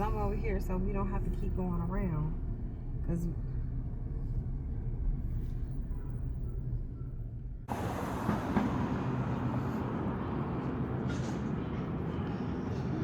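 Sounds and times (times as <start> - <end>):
road rumble inside a car: 0.0 - 7.9
outdoor noise: 0.0 - 13.0.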